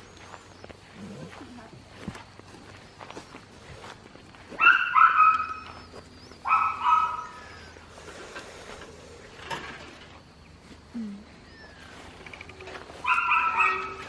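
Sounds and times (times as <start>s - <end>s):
animal high-pitched cries: 11.3s - 14.0s.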